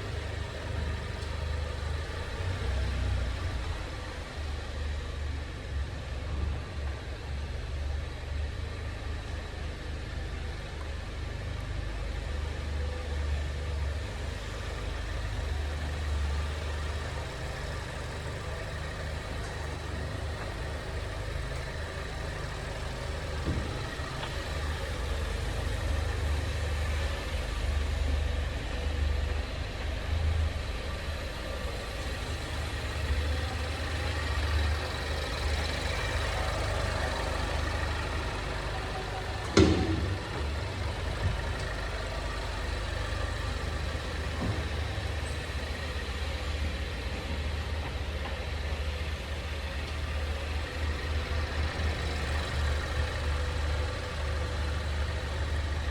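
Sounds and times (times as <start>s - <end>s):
car engine rumbling: 13.9s - 55.9s
sharp knock from chassis: 39.5s - 40.6s.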